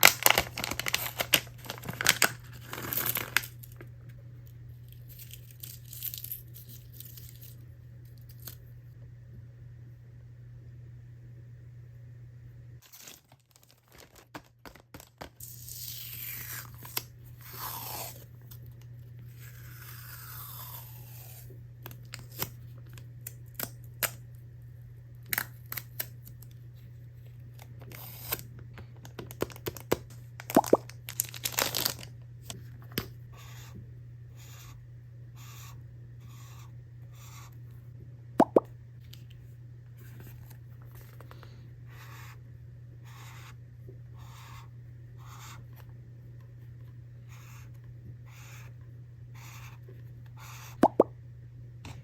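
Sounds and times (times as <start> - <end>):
packaging tearing: 0.0 - 3.7, 29.2 - 32.1.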